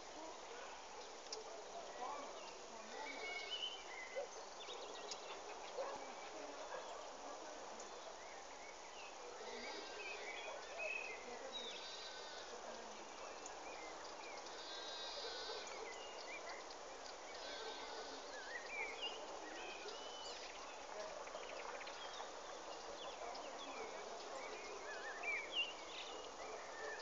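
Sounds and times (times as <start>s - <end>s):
outdoor background hiss: 0.0s - 27.0s
small birds chirping: 0.0s - 27.0s.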